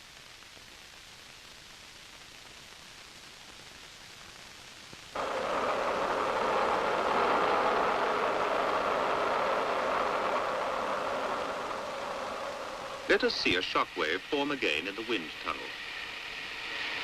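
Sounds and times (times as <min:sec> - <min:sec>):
soundtrack hiss: 0:00.0 - 0:17.0
wind tunnel air rushing: 0:05.2 - 0:17.0.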